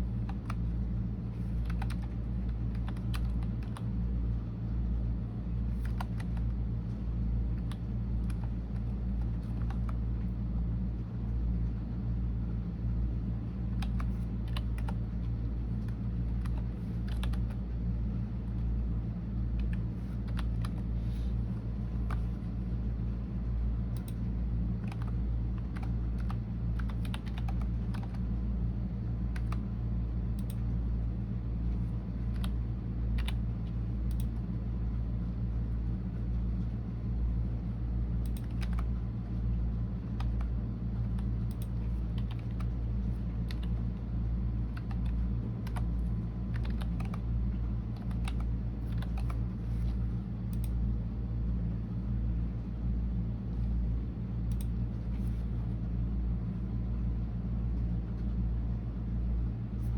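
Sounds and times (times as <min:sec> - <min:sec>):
steady low rumble: 0:00.0 - 0:59.9
keyboard typing: 0:01.4 - 0:03.9, 0:05.7 - 0:06.6, 0:13.8 - 0:15.1, 0:15.7 - 0:17.6, 0:19.6 - 0:20.9, 0:24.8 - 0:28.3, 0:29.3 - 0:29.6, 0:38.2 - 0:38.9, 0:40.2 - 0:43.8, 0:44.7 - 0:47.3, 0:47.9 - 0:50.7.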